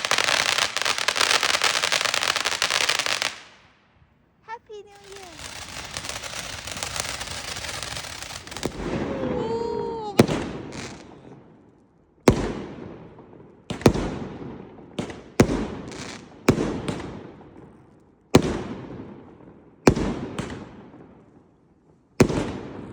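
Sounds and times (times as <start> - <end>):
fireworks crackling hiss: 0.0 - 3.6, 4.7 - 11.2
fireworks bangs: 0.0 - 3.8, 4.6 - 11.6, 22.2 - 22.9.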